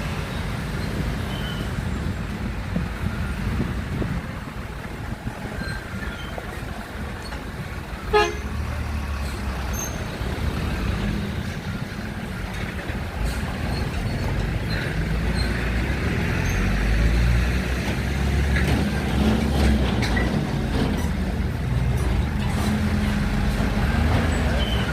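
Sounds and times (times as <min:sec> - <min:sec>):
heavy vehicle engine running: 0:00.0 - 0:24.9
road traffic: 0:00.0 - 0:24.9
vehicle horn toot: 0:08.1 - 0:08.5.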